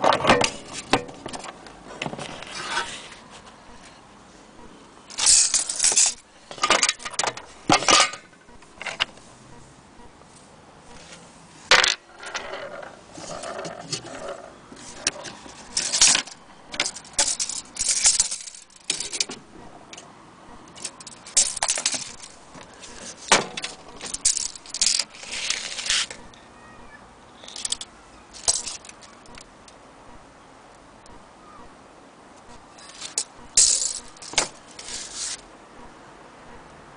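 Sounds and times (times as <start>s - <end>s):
small metal parts clinking: 5.1s - 9.1s, 11.7s - 20.0s, 20.7s - 26.2s, 27.4s - 29.5s, 32.8s - 35.4s.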